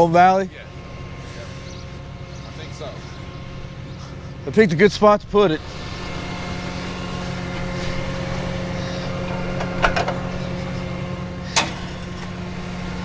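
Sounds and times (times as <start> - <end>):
truck engine idling: 0.0 - 13.0
short knocks: 6.0 - 10.9.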